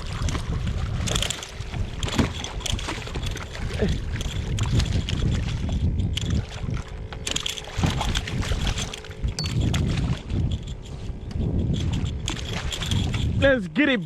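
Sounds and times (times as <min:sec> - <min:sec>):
lapping water: 0:00.0 - 0:13.3
wind buffeting microphone: 0:00.0 - 0:14.0
sharp clicks and knocks: 0:07.0 - 0:09.8.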